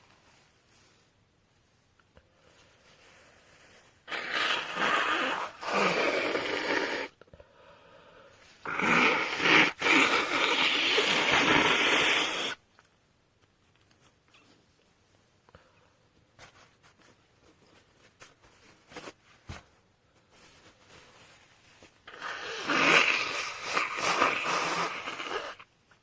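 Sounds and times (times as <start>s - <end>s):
woman blowing her nose: 4.0s - 7.2s, 8.6s - 12.6s, 22.0s - 25.7s.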